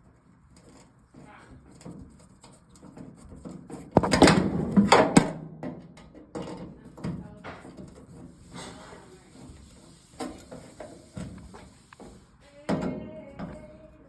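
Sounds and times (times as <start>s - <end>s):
metal cabinet knocking and rattling: 3.4s - 8.0s.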